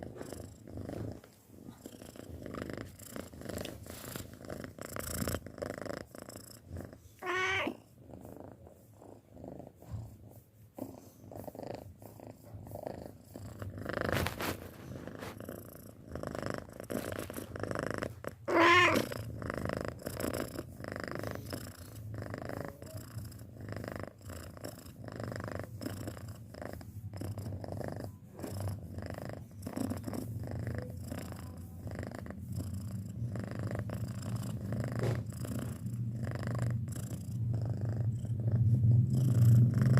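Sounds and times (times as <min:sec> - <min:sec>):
cat purring: 0:00.0 - 0:39.9
cat wavering cry: 0:07.2 - 0:07.8, 0:18.5 - 0:19.0.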